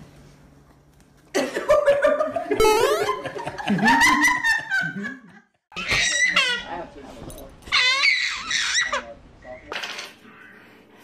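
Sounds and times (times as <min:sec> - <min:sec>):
people laughing: 0:01.4 - 0:05.6.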